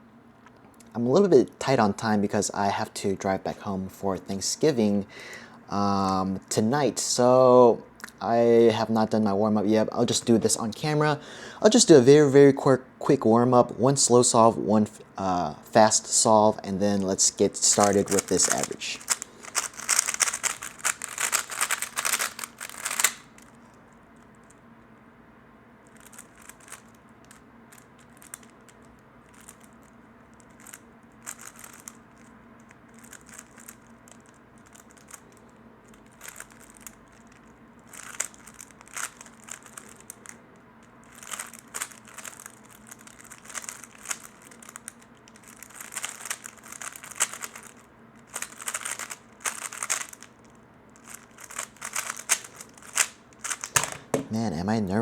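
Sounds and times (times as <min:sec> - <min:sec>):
puzzle cube clattering: 0:16.9 - 0:24.4, 0:25.8 - 0:32.3, 0:32.9 - 0:54.6.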